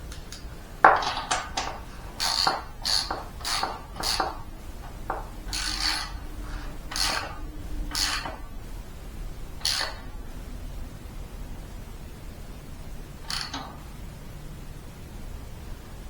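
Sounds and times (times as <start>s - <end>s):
ratchet wrench clicking: 0.1s - 8.4s, 9.6s - 10.2s, 13.2s - 13.8s.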